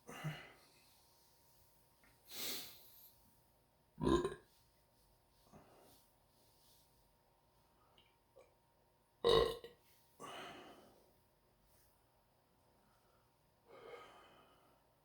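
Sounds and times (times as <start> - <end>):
person belching loudly: 4.0 - 4.4, 9.3 - 9.7.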